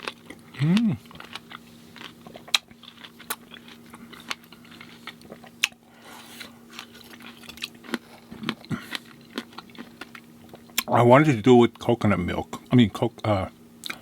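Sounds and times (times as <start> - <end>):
wet chewing: 0.0 - 10.9.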